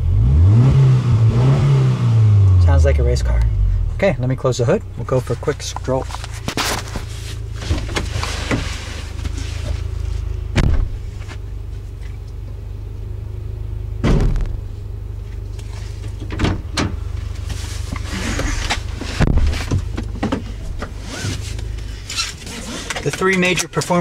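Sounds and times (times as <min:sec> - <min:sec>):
car engine idling: 0:01.2 - 0:24.0
car hood and door shutting: 0:06.5 - 0:09.3, 0:10.5 - 0:11.4, 0:14.0 - 0:14.8, 0:16.1 - 0:17.0, 0:18.2 - 0:21.5.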